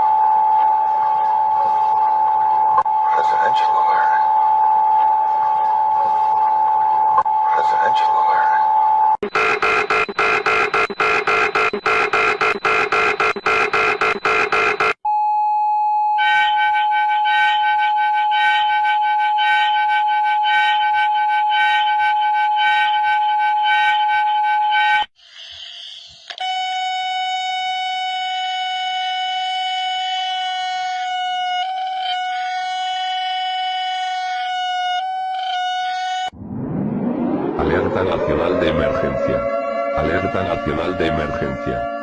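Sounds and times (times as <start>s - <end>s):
steady alarm tone: 8.7s - 15.0s, 26.4s - 42.0s
burst of static: 9.2s - 15.0s
rapid pulsing beep: 9.2s - 15.0s.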